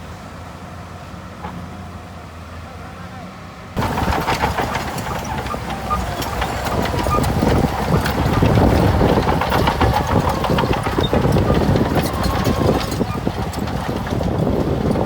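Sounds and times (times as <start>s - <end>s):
diesel engine running: 3.8s - 15.0s
metal and rock clanking: 3.8s - 15.0s.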